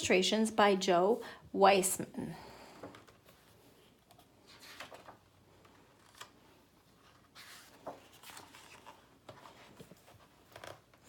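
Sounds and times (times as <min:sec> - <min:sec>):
paper pages rustling and turning: 0:02.8 - 0:11.0.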